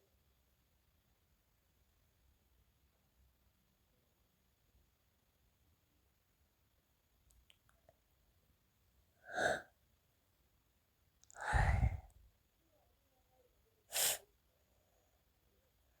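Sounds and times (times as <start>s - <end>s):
harsh bursts of breath: 11.4s - 12.1s, 13.9s - 14.2s.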